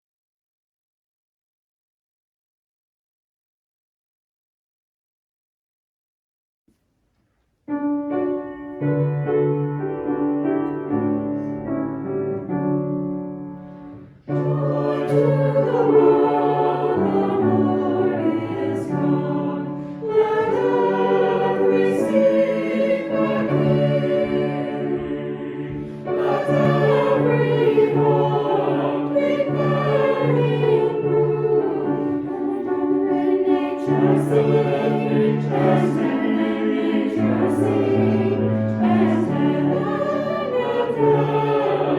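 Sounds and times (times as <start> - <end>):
choir singing: 8.6 - 41.9.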